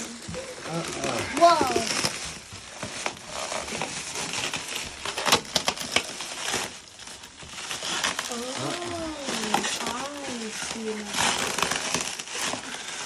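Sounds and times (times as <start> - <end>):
cardboard and packing crinkling: 0.0 - 13.0.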